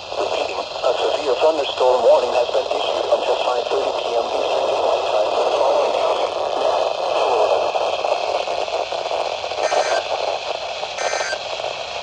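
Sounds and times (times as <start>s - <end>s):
radio reception hiss: 0.0s - 12.0s
short digital data bursts: 9.6s - 10.1s, 11.0s - 11.4s.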